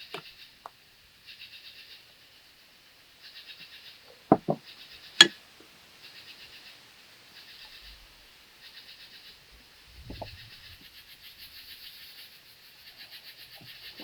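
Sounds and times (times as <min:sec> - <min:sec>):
insects chirping: 0:00.0 - 0:14.0
hard knocks: 0:04.3 - 0:04.6.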